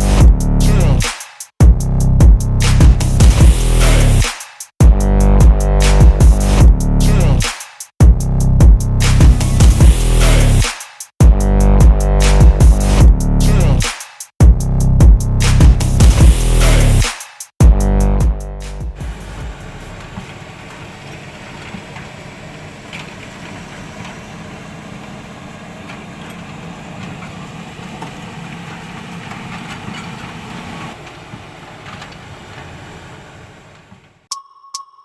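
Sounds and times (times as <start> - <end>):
excavator engine hum: 19.0 - 33.9.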